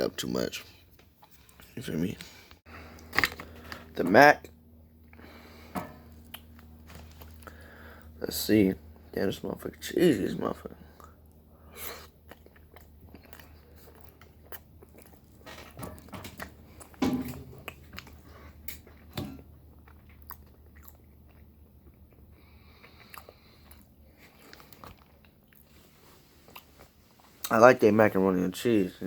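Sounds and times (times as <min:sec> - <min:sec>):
person chewing food: 0:04.8 - 0:08.2, 0:10.8 - 0:27.5.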